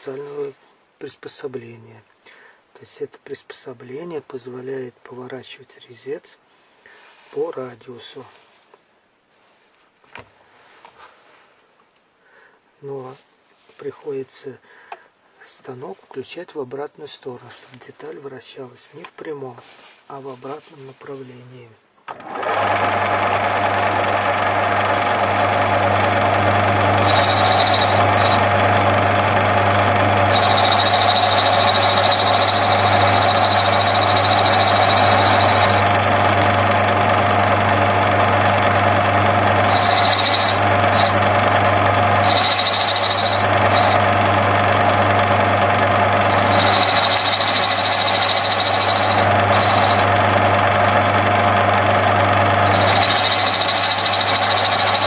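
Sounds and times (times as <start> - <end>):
lathe hum: 22.2 - 55.0
high-pitched cutting whine: 25.1 - 55.0.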